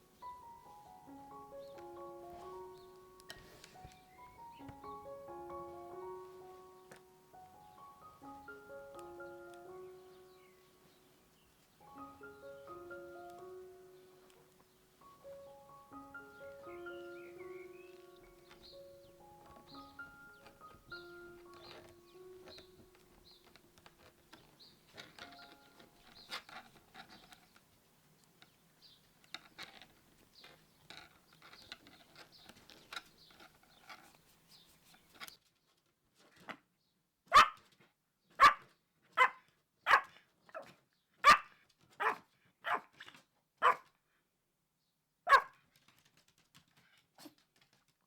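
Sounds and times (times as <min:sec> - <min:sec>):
faint clicks and rustles: 0:01.3 - 0:36.7, 0:45.5 - 0:48.0
small dog barking: 0:37.3 - 0:37.6, 0:38.4 - 0:43.0, 0:43.6 - 0:43.9, 0:45.3 - 0:45.6.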